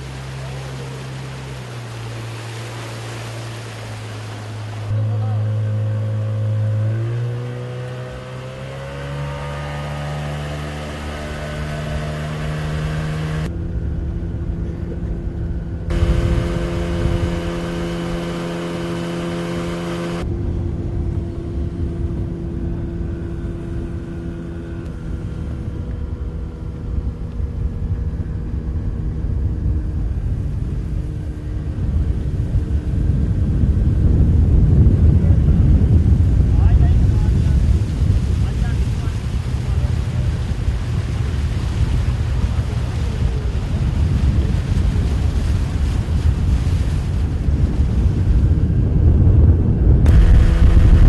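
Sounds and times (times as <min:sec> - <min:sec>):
vehicle engine revving: 0:00.0 - 0:13.5, 0:14.6 - 0:20.3, 0:50.0 - 0:51.0
low rumble: 0:00.0 - 0:51.0.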